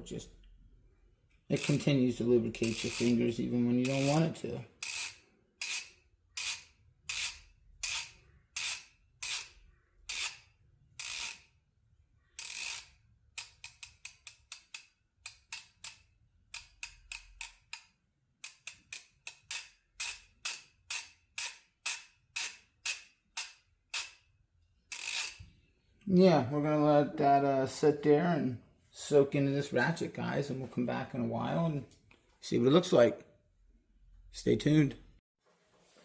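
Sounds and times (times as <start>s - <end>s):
ratchet clicking: 1.5s - 11.6s, 12.4s - 24.3s, 24.9s - 25.4s.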